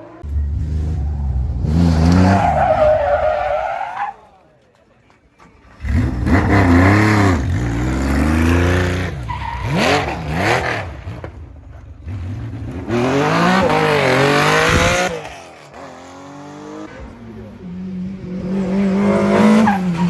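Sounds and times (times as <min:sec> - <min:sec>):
rally car engine revving: 0:00.0 - 0:03.7, 0:05.7 - 0:20.0
tyre squeal: 0:02.2 - 0:04.3.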